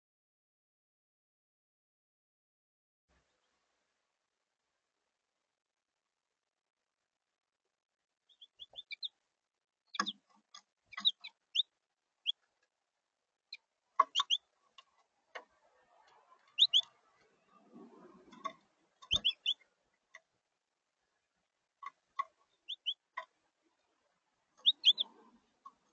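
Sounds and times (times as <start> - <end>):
songbirds chirping: 8.2 - 9.2, 9.8 - 12.7, 13.4 - 20.3, 21.0 - 25.9.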